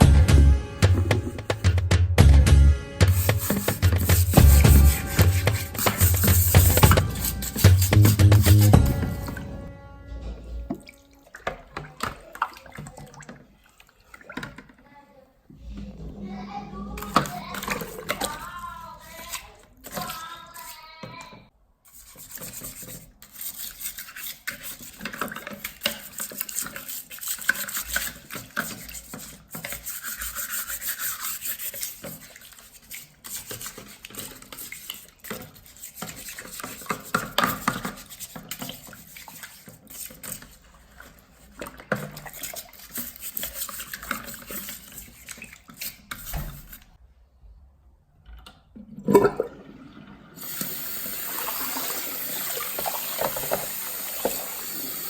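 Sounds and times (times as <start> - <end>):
hand scrubbing with water: 0.0 - 1.9, 3.0 - 9.7, 10.6 - 15.0, 16.2 - 20.9, 21.9 - 47.0, 49.0 - 55.0
running water: 3.1 - 9.6, 10.6 - 15.0, 22.2 - 46.8, 48.9 - 55.0.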